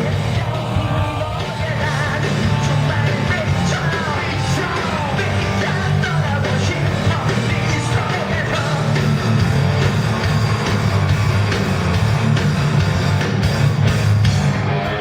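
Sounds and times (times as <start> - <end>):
shouted sung vocal: 0.0 - 9.2
live rock band playing: 0.0 - 15.0.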